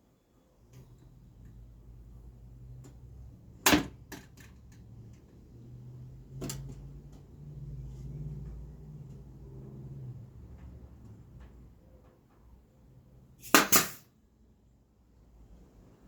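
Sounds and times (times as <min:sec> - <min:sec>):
nail gun firing: 0:13.4 - 0:14.0.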